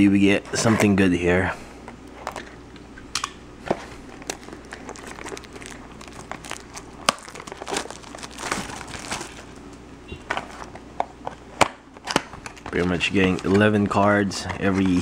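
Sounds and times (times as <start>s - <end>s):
plastic wrapping crinkling and tearing: 4.0s - 10.9s, 11.9s - 15.0s
packaging clicks and snaps: 4.1s - 9.5s, 10.3s - 13.9s.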